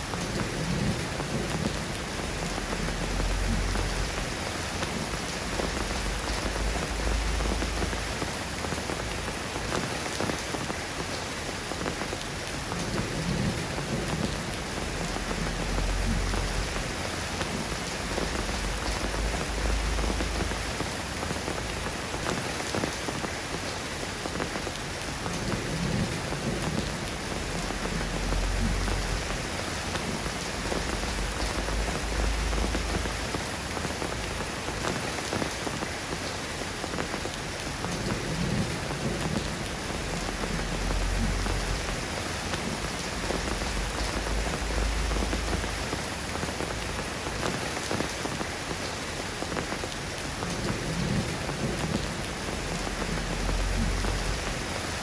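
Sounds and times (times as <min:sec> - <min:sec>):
steady rain falling: 0:00.0 - 0:55.0
low rumbles: 0:00.2 - 0:09.3, 0:12.9 - 0:21.9, 0:25.7 - 0:34.7, 0:38.4 - 0:47.3, 0:50.8 - 0:55.0.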